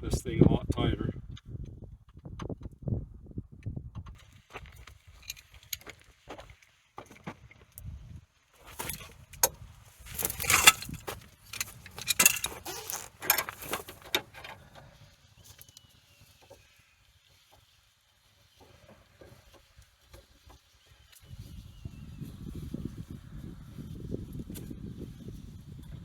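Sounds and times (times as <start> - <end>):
metal tools clinking and jangling: 10.1 - 14.4.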